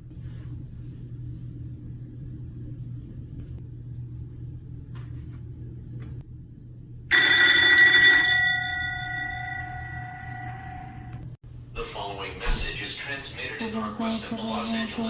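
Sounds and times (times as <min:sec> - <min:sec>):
low rumble and hum: 0:00.0 - 0:07.1, 0:08.5 - 0:15.0
loud bell-like strike ringing: 0:07.1 - 0:11.2.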